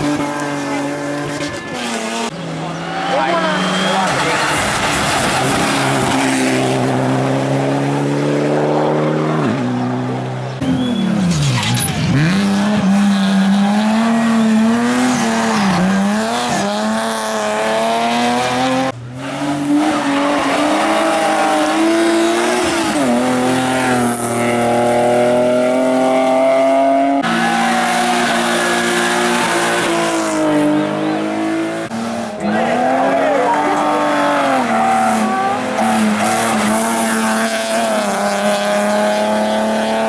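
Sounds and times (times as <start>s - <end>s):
race car engines at full throttle: 0.0s - 40.0s
tyre squeal: 10.6s - 12.2s.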